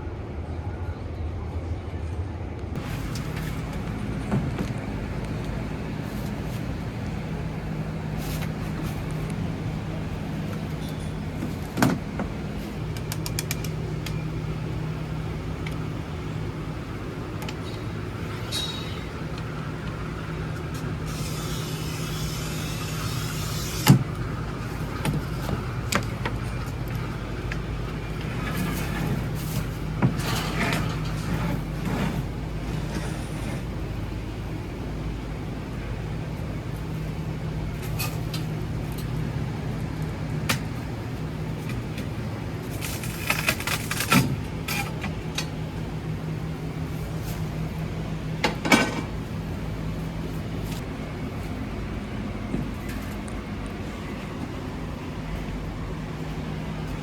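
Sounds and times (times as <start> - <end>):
low mechanical hum: 0.0 - 57.0
hissing noise: 18.1 - 24.9.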